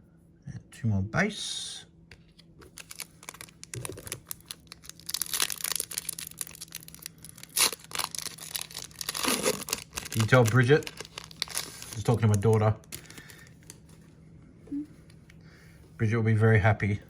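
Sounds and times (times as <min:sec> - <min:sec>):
wrapper crinkling and tearing: 0:02.7 - 0:13.9.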